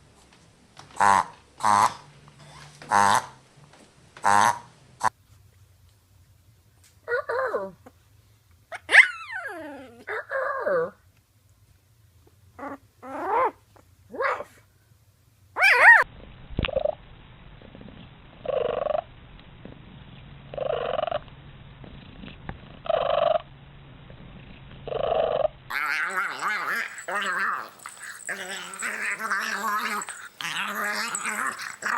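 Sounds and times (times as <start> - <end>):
animal calls: 24.9 - 31.9.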